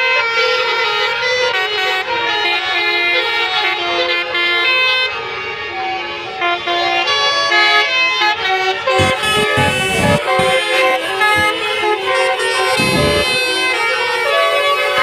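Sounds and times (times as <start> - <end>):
bus horn playing a tune: 8.8 - 13.7.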